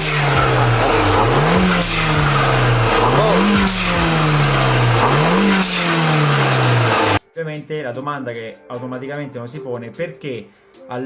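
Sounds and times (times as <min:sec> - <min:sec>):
car engine blipping: 0:00.0 - 0:07.2.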